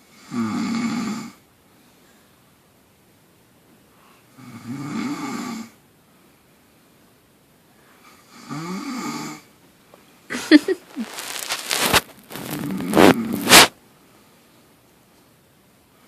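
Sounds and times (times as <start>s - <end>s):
person snoring: 12.4s - 13.6s.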